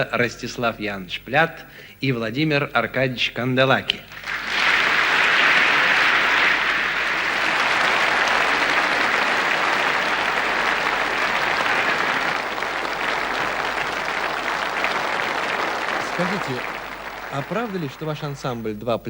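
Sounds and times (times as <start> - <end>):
audience applauding: 4.1 - 18.8.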